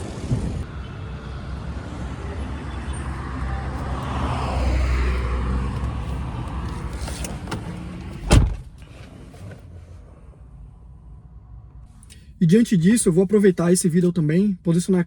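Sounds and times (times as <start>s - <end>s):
road traffic passing: 0.0s - 12.4s
car door slamming: 7.3s - 8.8s.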